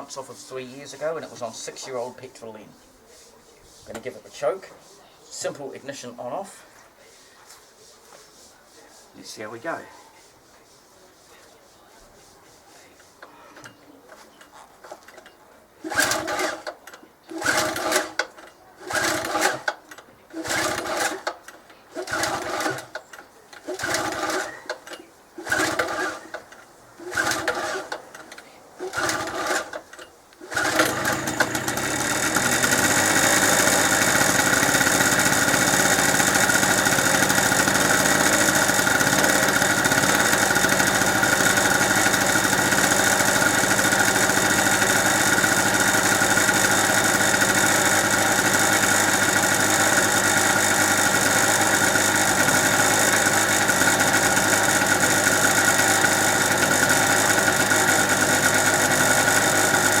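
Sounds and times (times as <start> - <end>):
two-stroke generator engine running: 15.8 - 16.7, 17.3 - 18.2, 18.8 - 21.3, 22.0 - 23.0, 23.6 - 24.5, 25.4 - 26.3, 27.0 - 29.8, 30.4 - 60.0.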